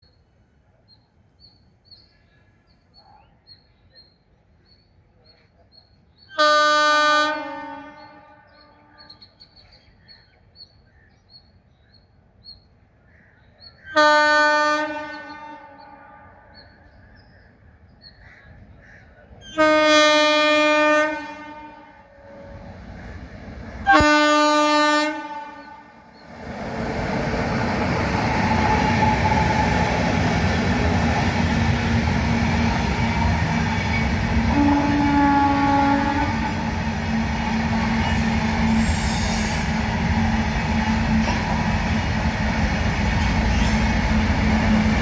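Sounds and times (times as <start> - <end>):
train passing: 3.5 - 45.0
diesel locomotive horn blasts: 6.3 - 9.2, 13.9 - 16.6, 19.4 - 22.8, 23.8 - 26.2, 32.0 - 42.2
wheels rattling on rail: 26.1 - 45.0.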